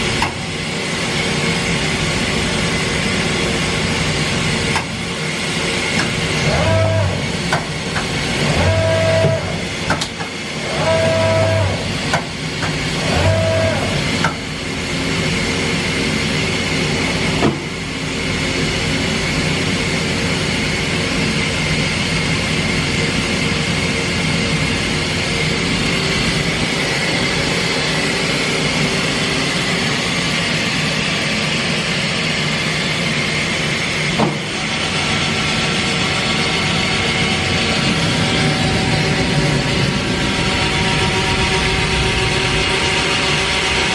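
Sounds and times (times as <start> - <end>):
mechanical hum with high whine: 0.0 - 43.9
machine motor whirs: 5.8 - 14.6, 32.8 - 43.9.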